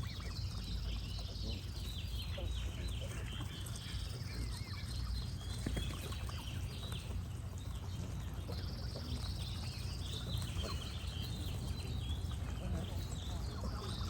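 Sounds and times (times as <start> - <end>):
geese honking: 0.0 - 7.2
small birds chirping: 0.0 - 14.0.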